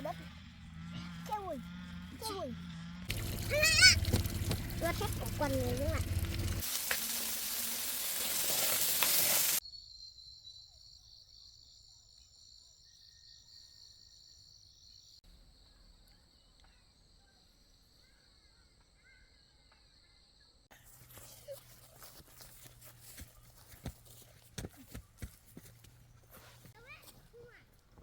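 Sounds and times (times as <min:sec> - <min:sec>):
loud rushing hiss: 0:06.0 - 0:09.6.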